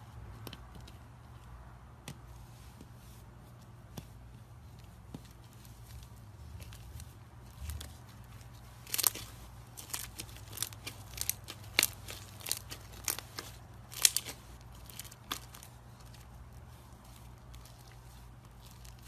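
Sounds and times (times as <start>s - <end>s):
crunchy slime crackling: 5.3s - 19.0s.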